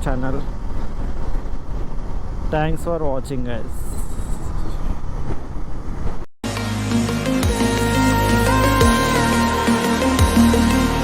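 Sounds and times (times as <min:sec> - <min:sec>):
road and wind noise: 0:00.0 - 0:06.3
electronic music with bass: 0:06.4 - 0:11.0.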